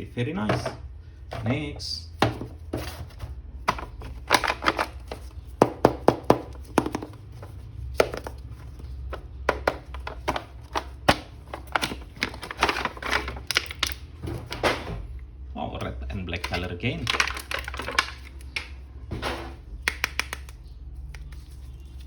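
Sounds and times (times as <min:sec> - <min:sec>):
plastic packaging clicks and taps: 0:03.7 - 0:07.2, 0:08.0 - 0:08.4, 0:09.1 - 0:14.0, 0:16.4 - 0:18.8, 0:19.8 - 0:21.4.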